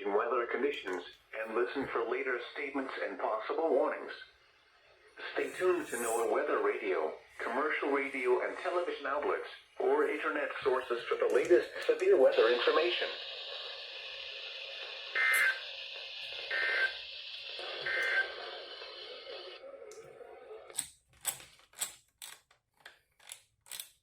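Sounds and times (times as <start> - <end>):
radio hiss: 0.0 - 20.7
two-tone digital data bursts: 15.1 - 17.0, 17.6 - 18.4.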